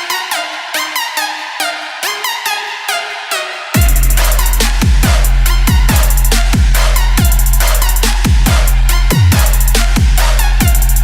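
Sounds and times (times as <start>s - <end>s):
electronic dance music: 0.0s - 11.0s
falling bass drum kicks: 3.8s - 7.5s.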